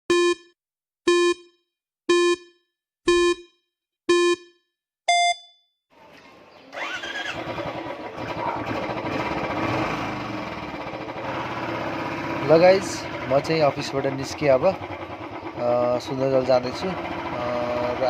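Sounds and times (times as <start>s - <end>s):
countdown beeps: 0.1s - 5.6s
motorcycle engine starting and running: 6.1s - 18.0s.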